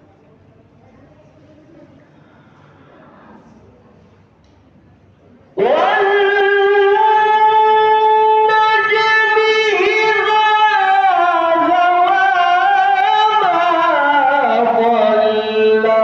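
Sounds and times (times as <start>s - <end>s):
man chanting a long melodic vowel: 5.6s - 16.0s.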